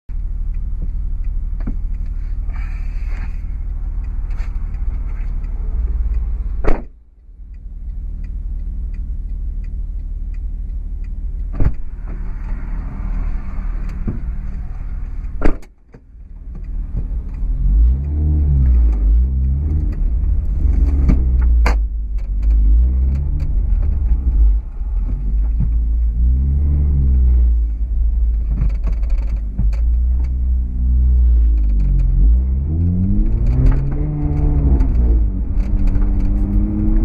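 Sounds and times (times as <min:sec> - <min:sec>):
moving car rumble: 0:00.1 - 0:37.0.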